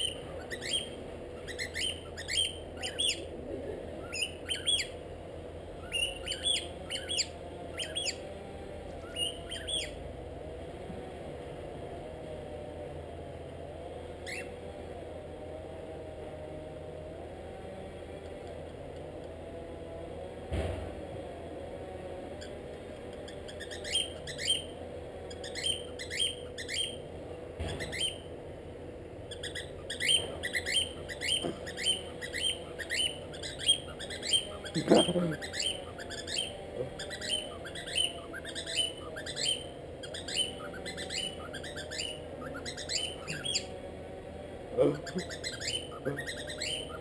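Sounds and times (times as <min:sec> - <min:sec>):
cockatiel chirping: 0:00.0 - 0:03.2, 0:04.0 - 0:05.0, 0:05.8 - 0:08.2, 0:09.0 - 0:10.0, 0:23.5 - 0:24.7, 0:25.4 - 0:27.0, 0:27.8 - 0:28.2, 0:29.3 - 0:43.7, 0:44.8 - 0:47.0.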